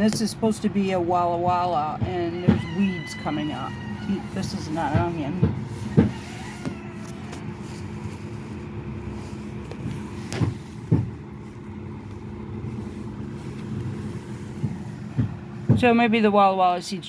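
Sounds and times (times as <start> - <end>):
motor humming: 0.6 - 15.8
short knocks: 4.0 - 8.0, 9.7 - 11.3, 14.6 - 16.0.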